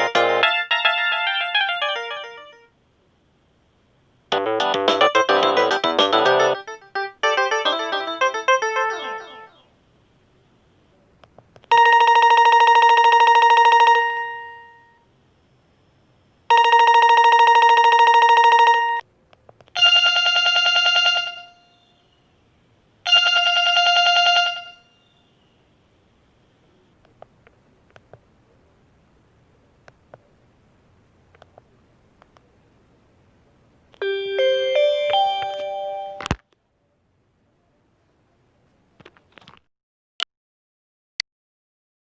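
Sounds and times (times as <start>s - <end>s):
buzzy electronic phone rings: 0.0s - 2.7s, 4.3s - 9.7s, 11.7s - 15.1s, 16.5s - 19.0s, 19.8s - 22.1s, 23.0s - 25.2s, 34.0s - 36.3s
polyphonic ringtone melody: 0.0s - 2.7s, 4.3s - 9.6s, 11.7s - 15.0s, 16.5s - 19.0s, 19.8s - 21.7s, 23.1s - 24.9s, 34.0s - 36.2s.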